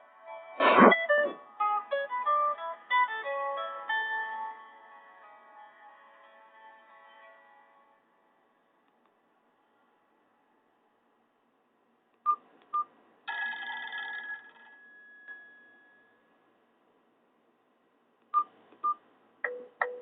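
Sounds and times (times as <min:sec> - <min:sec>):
phone ringtone: 0:13.3 - 0:16.2, 0:19.5 - 0:20.0.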